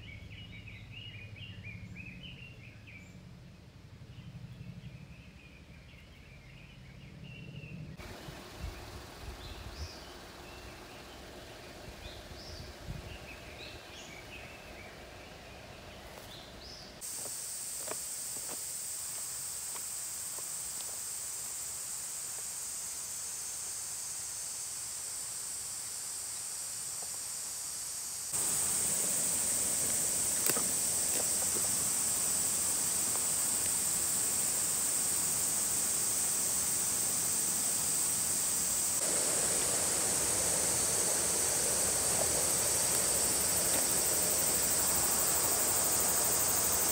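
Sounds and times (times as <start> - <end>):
flowing water rushing: 28.4 - 46.9.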